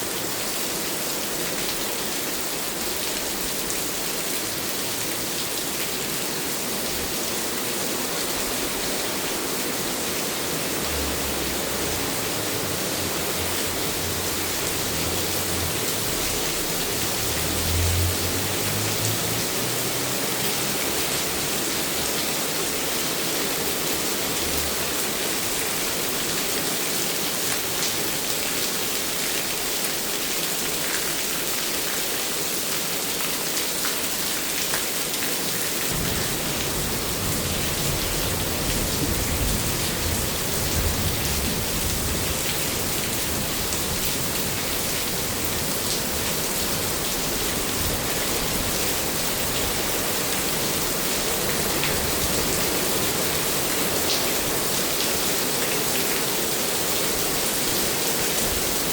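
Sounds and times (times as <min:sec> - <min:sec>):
steady rain: 0:00.0 - 0:58.9.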